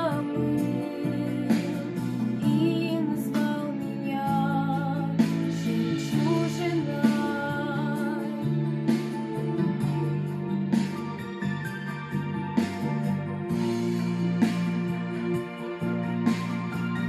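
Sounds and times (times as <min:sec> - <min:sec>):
person singing: 0:00.0 - 0:08.9.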